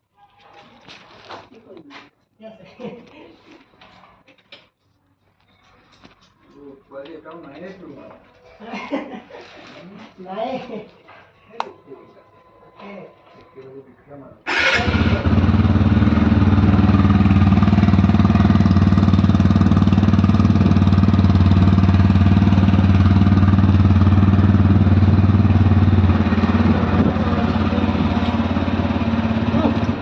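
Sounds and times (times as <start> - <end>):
motorcycle engine idling: 14.5 - 30.0.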